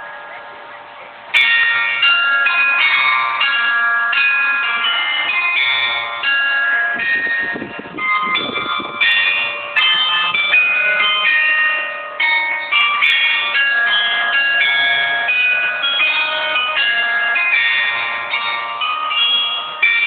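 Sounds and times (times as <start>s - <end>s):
tower bells playing melody: 0.0s - 20.0s
wind rumbling on microphone: 6.8s - 10.6s.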